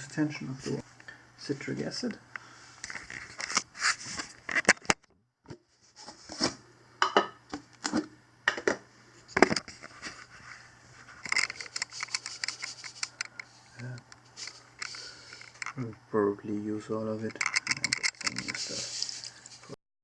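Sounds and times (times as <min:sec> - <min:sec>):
objects clicking and knocking: 0:07.5 - 0:10.2, 0:11.1 - 0:16.0, 0:17.2 - 0:19.3.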